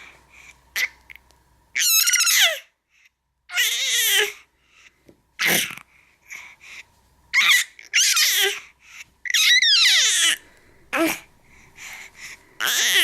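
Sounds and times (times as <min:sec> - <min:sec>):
baby squealing and shrieking: 0:01.8 - 0:02.7, 0:03.5 - 0:04.4, 0:07.3 - 0:08.6, 0:09.2 - 0:10.4, 0:12.6 - 0:13.0.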